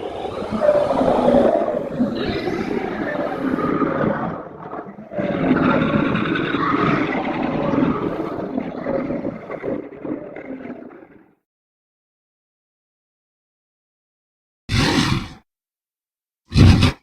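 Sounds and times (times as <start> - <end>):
monster roar: 14.7 - 15.4, 16.5 - 17.0.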